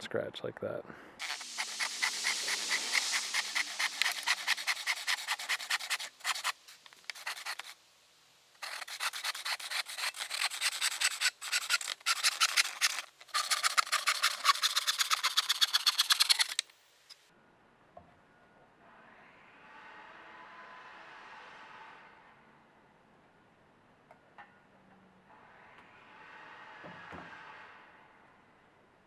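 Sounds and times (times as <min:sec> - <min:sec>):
handsaw cutting wood: 0:01.2 - 0:07.8, 0:08.6 - 0:16.7.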